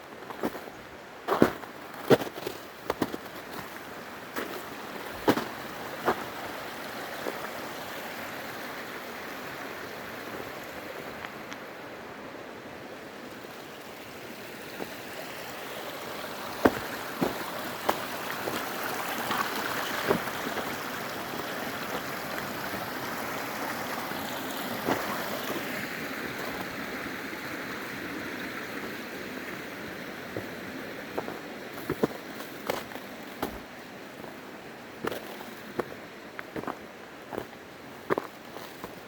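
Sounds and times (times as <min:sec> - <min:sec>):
creek rushing over rocks: 0:00.0 - 0:39.0.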